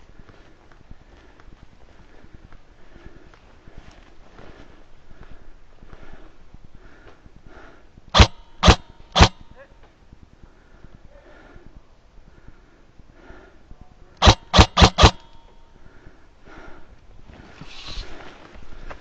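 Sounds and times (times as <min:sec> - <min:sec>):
airsoft gun shots: 0:08.2 - 0:09.6, 0:14.2 - 0:15.4.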